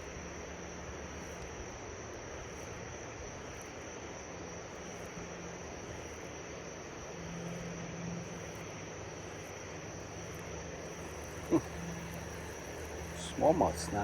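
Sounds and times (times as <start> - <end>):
low hum: 5.2 - 14.0
river water rushing: 11.0 - 14.0.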